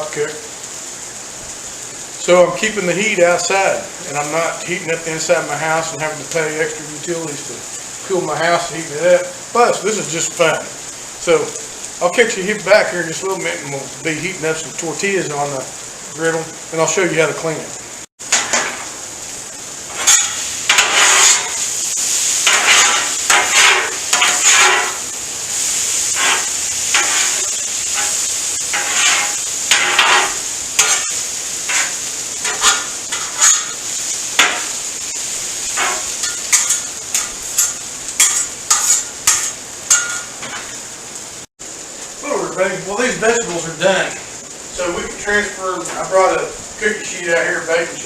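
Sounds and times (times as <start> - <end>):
vegetables sizzling on a griddle: 0.0 - 48.0
spatula scraping griddle: 18.3 - 19.0, 19.9 - 40.8.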